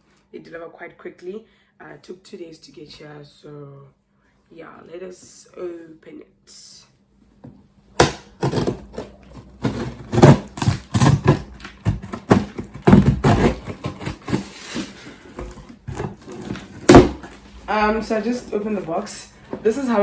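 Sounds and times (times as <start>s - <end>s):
cardboard box being opened: 8.4s - 19.1s.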